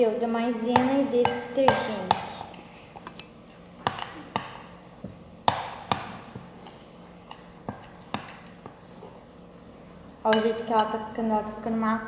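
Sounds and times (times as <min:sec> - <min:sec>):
spoon clinking against bowl: 0:10.3 - 0:11.1.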